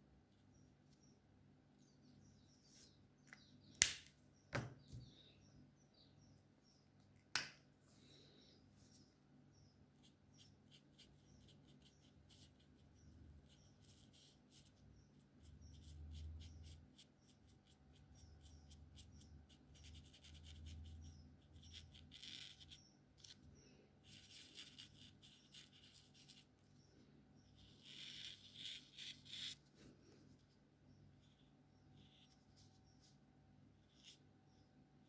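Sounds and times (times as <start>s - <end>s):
marker tip scratching on paper: 10.0s - 23.4s, 24.0s - 26.5s, 27.5s - 29.6s.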